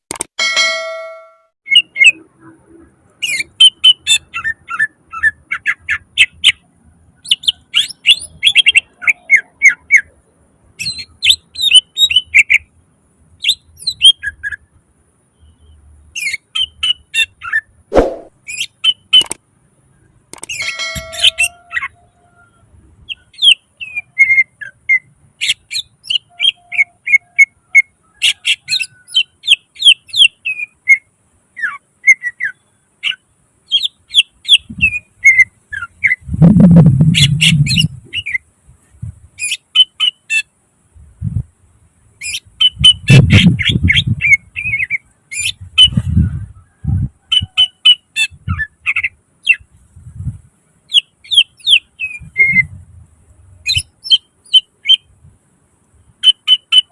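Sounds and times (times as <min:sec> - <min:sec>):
bird singing sharp chirps: 0:15.3 - 0:19.4, 0:20.5 - 0:27.8.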